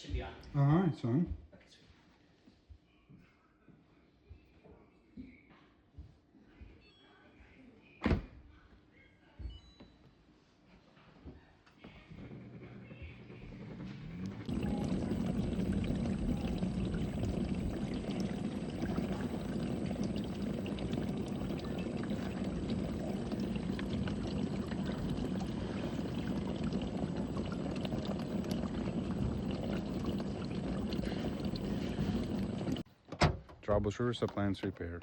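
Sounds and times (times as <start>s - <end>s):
dishwasher low hum: 11.9s - 32.8s
dishwasher water splashing: 14.1s - 32.8s.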